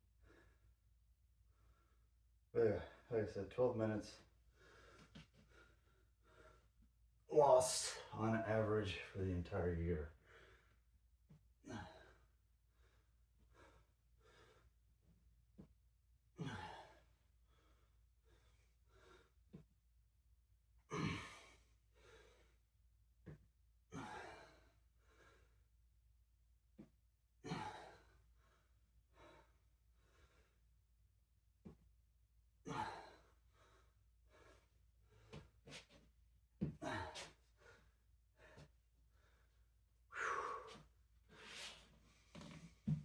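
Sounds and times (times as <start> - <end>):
person breathing heavily: 36.8 - 41.8.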